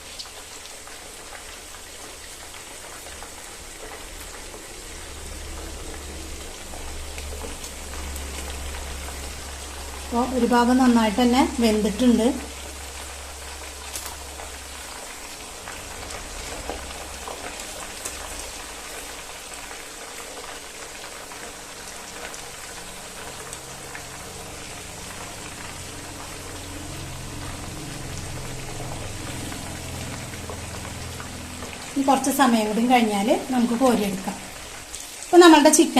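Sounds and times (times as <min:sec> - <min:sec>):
chicken deep-frying in oil: 0:00.0 - 0:35.9.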